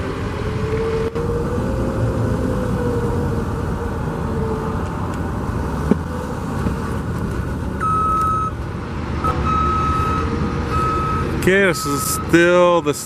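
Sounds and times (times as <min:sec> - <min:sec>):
road traffic rumble: 0:00.0 - 0:13.0
reversing alarm beeping: 0:07.8 - 0:08.6, 0:09.2 - 0:12.5.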